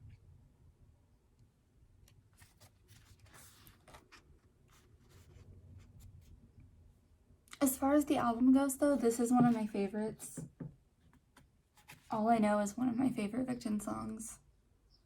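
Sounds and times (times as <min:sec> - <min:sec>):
paper pages rustling: 0:02.3 - 0:06.3.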